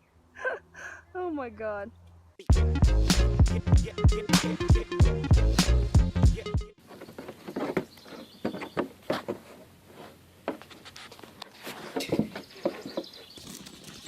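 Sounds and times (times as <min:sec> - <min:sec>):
farm animal sounds and clicks: 0:06.9 - 0:09.6, 0:10.4 - 0:14.0.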